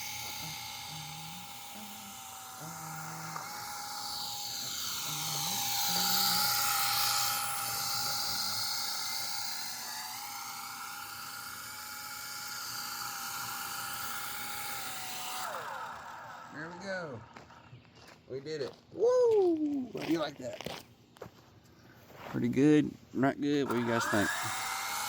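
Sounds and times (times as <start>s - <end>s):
helicopter rotor noise: 0.0s - 17.8s, 23.6s - 25.0s
electric motor whining: 0.0s - 17.9s, 23.5s - 25.0s.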